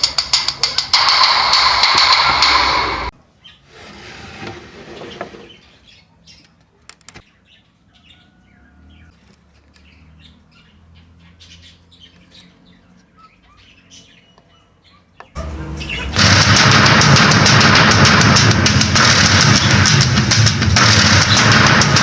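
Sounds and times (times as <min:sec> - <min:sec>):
sharp clicks: 0:00.0 - 0:03.1, 0:15.4 - 0:22.0
birds chirping: 0:00.0 - 0:03.7, 0:04.9 - 0:17.7
low steady hum: 0:15.4 - 0:17.3.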